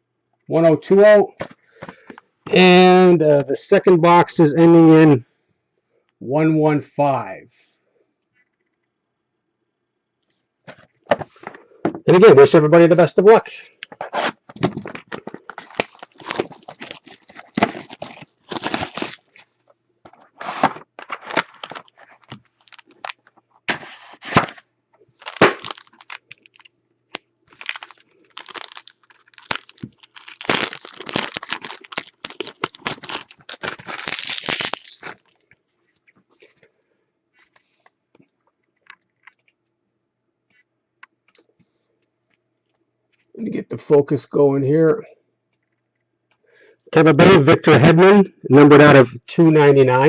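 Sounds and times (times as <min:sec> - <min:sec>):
wrapping and cardboard tearing: 0:14.0 - 0:19.5, 0:20.1 - 0:24.6, 0:25.2 - 0:26.7, 0:27.5 - 0:35.4.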